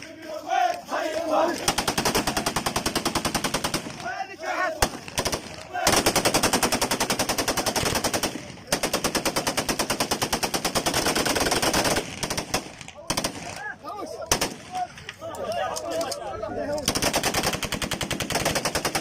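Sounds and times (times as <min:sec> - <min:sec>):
people shouting: 0:00.0 - 0:03.0, 0:03.7 - 0:08.0, 0:13.0 - 0:16.9
automatic gunfire: 0:01.6 - 0:04.0, 0:04.8 - 0:13.7, 0:14.3 - 0:14.7, 0:16.8 - 0:19.0.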